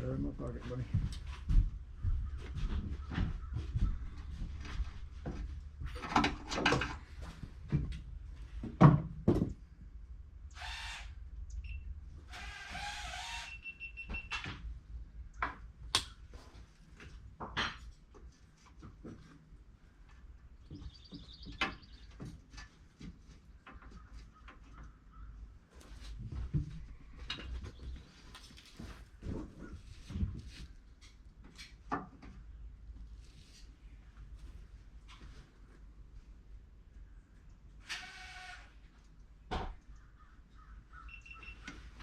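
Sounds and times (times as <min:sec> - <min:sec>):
knocks clicks and scraping: 0:02.8 - 0:08.1.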